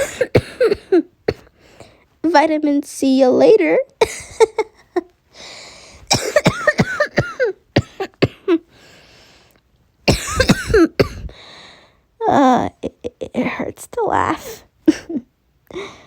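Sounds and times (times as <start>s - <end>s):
person coughing hard: 0.0s - 1.5s, 6.1s - 8.7s, 10.1s - 11.3s
noisy in-breaths: 1.5s - 2.1s, 5.3s - 6.1s, 8.7s - 9.6s, 11.1s - 12.1s, 15.7s - 16.0s.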